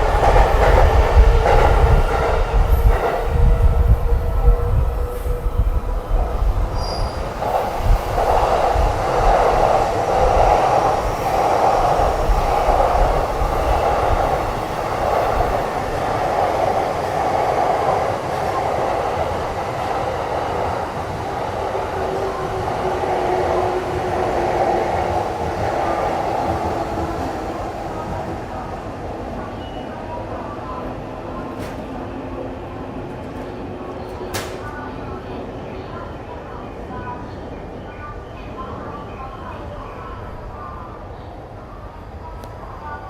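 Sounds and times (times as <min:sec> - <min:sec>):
wind rumbling on microphone: 0:00.0 - 0:29.4
train wheels rolling on rails: 0:00.0 - 0:29.8, 0:31.4 - 0:34.9.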